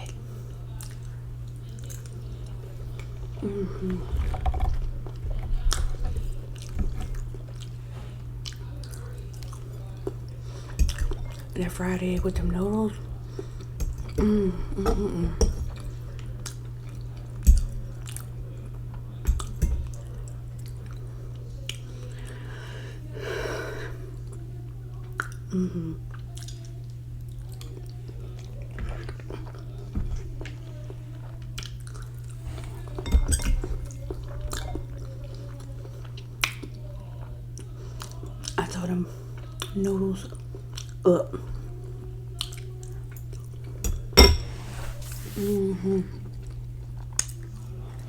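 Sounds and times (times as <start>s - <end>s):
steady low hum: 0.0s - 48.0s
person chewing noodles: 30.4s - 33.1s, 40.3s - 41.0s, 46.3s - 48.0s.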